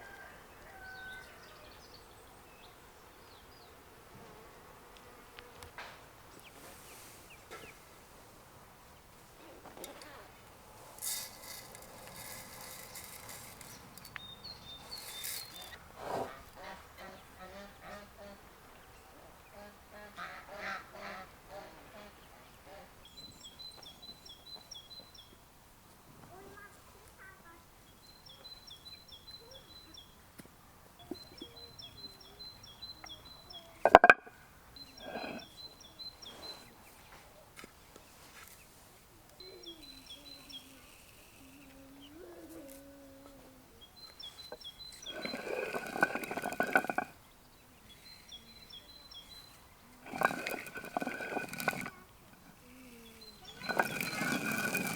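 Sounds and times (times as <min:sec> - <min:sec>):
songbird chirping: 0:00.0 - 0:04.0, 0:05.0 - 0:54.9
faint hissy rustling: 0:03.6 - 0:16.6, 0:35.0 - 0:54.9.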